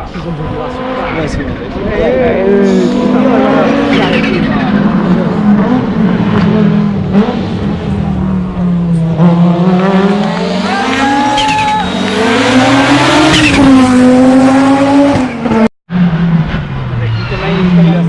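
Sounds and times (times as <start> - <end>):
rally car engine revving: 0.0 - 18.0
tyres squealing: 17.0 - 18.0.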